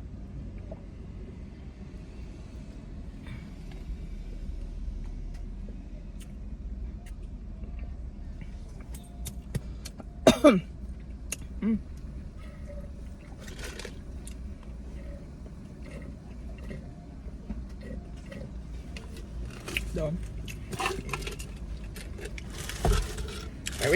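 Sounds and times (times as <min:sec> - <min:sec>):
eating sounds: 0:11.3 - 0:23.9.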